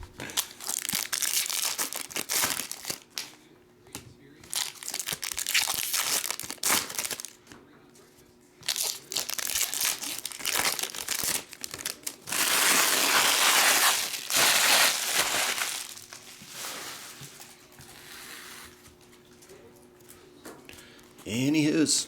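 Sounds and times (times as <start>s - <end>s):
wrapper crinkling and tearing: 0.2s - 3.4s, 4.4s - 7.4s, 8.6s - 17.6s.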